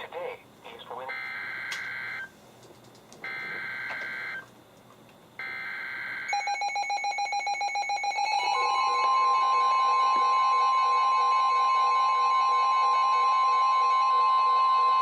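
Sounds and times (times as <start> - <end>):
steady warning alarm tone: 0.9 - 2.3, 3.2 - 4.5, 5.4 - 15.0
rapidly pulsing alert beep: 5.4 - 15.0.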